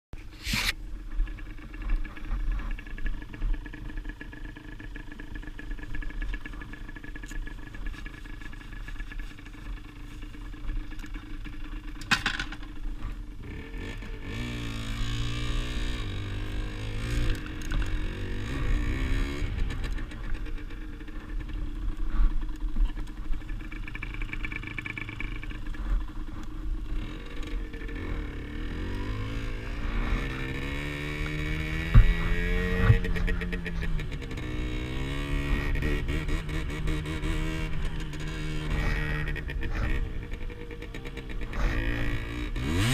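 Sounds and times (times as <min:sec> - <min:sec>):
motorcycle engine revving: 0:00.2 - 0:42.9.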